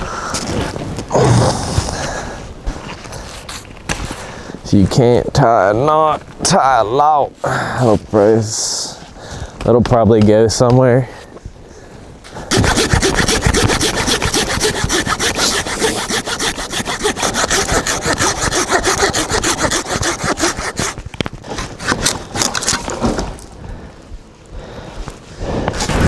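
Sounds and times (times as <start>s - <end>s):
hand saw cutting wood: 12.5s - 23.4s.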